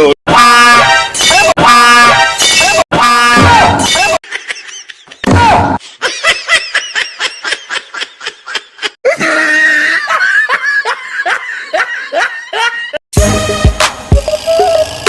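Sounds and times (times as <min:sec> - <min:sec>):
air horn blast: 0:00.3 - 0:04.0
high-pitched laughter: 0:06.0 - 0:13.0.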